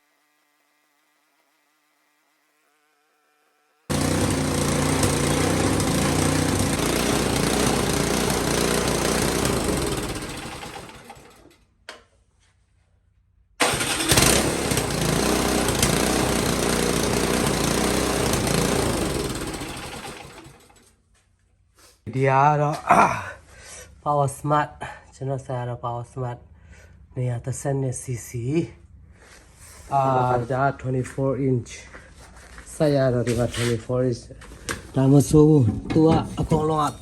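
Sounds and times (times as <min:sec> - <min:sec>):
snow blower engine running: 0:03.9 - 0:11.6, 0:13.6 - 0:20.9.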